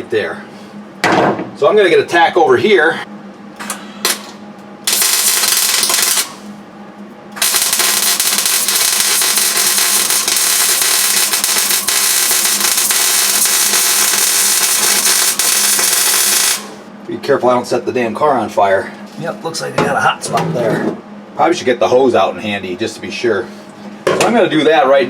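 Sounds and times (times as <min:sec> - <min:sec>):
mig welder crackling: 0:03.6 - 0:06.6, 0:07.3 - 0:16.9.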